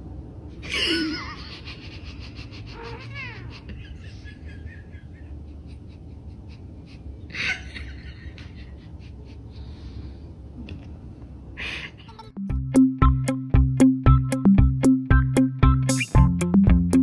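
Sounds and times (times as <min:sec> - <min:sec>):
music: 0:12.4 - 0:17.0.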